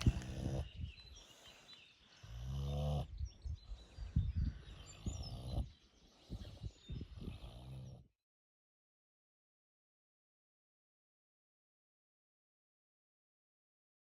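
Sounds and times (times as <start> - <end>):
pig snoring: 0.0 - 0.7, 2.2 - 3.3, 4.9 - 5.7, 7.0 - 8.1
rough snuffling breaths: 0.0 - 8.0.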